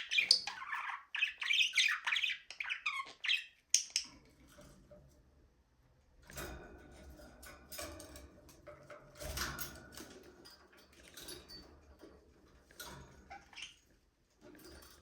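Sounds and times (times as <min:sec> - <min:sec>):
budgerigars chirping: 0:00.0 - 0:04.0.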